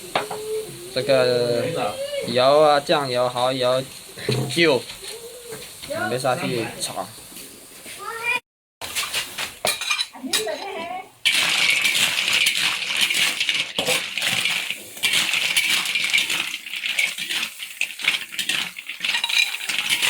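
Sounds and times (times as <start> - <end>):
steady sizzle: 0.0 - 20.0
shells clattering in a wok: 9.6 - 20.0.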